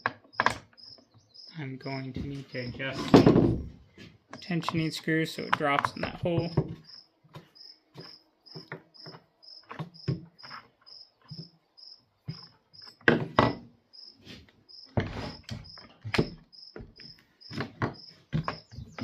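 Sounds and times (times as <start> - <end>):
cricket chirping: 0.0 - 3.0, 4.4 - 13.0, 13.9 - 19.0
knocks of chainsaw parts handled: 2.9 - 3.8.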